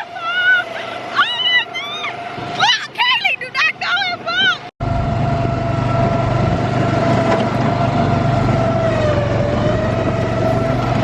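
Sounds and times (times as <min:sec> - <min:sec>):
go-kart motor running: 0:04.8 - 0:11.0.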